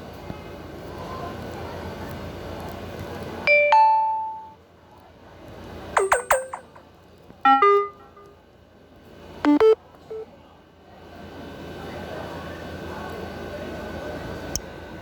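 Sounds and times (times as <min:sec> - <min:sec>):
phone notification chimes: 0:06.0 - 0:06.8, 0:07.5 - 0:08.2.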